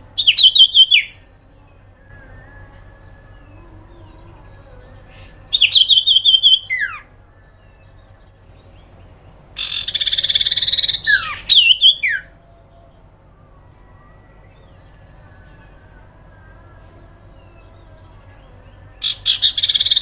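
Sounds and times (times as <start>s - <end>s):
bird chattering and trilling: 0.1s - 2.3s, 3.2s - 7.1s, 7.7s - 12.4s, 17.4s - 20.0s.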